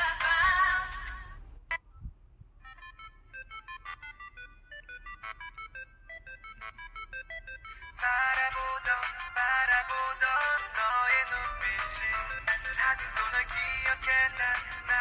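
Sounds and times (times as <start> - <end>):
electronic phone ringtone melody: 2.6 - 15.0.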